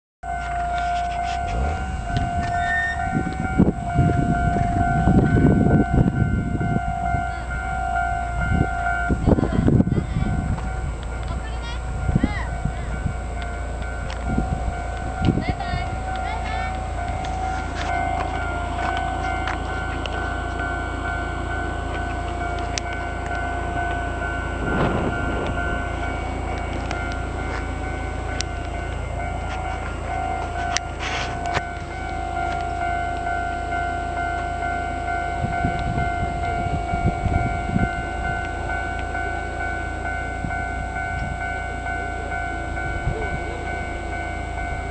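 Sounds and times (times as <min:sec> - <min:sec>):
level crossing alarm ringing: 0:00.2 - 0:44.9
low rumbling and clatter: 0:00.5 - 0:33.3
vehicle passing: 0:00.8 - 0:06.5.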